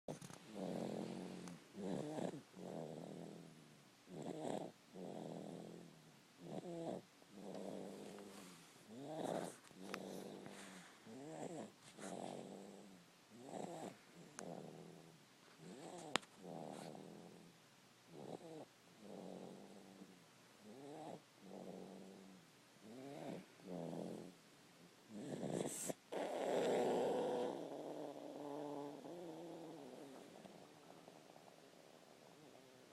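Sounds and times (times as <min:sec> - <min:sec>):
person snoring: 0:00.1 - 0:17.5, 0:25.1 - 0:30.7.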